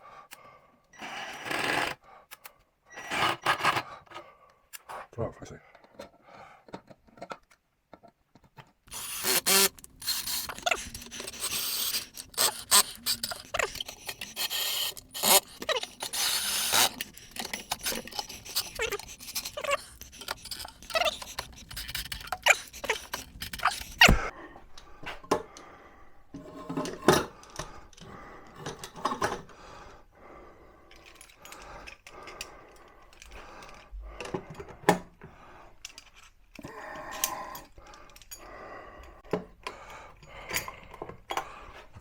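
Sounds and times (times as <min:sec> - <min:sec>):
hard objects clicking and knocking: 0:05.8 - 0:24.3.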